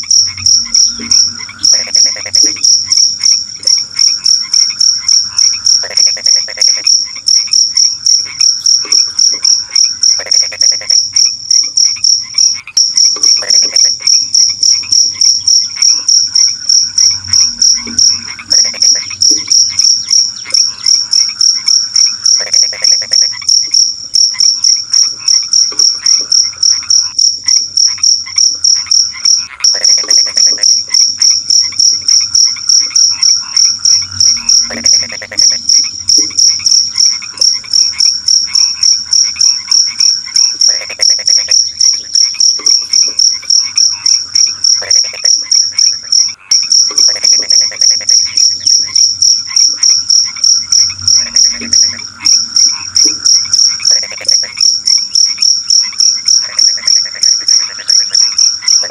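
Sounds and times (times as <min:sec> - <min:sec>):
crickets chirping: 0:00.0 - 0:58.9
frogs croaking: 0:00.0 - 0:58.9.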